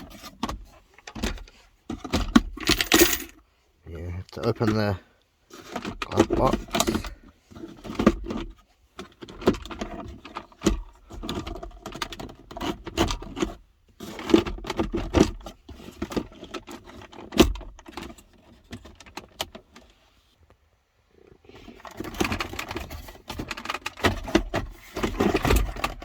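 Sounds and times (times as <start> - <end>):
plastic car trim clicking and knocking: 22.1 - 26.0.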